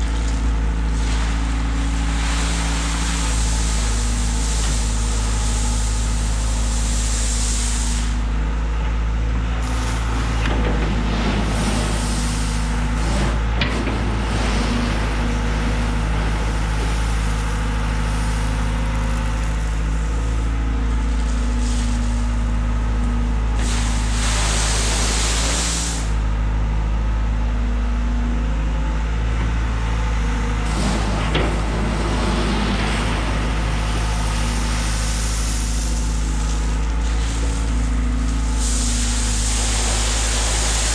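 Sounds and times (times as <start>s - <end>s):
loader engine running: 0.0s - 40.9s
hiss bursts: 1.0s - 8.2s, 23.5s - 26.2s, 30.6s - 40.9s.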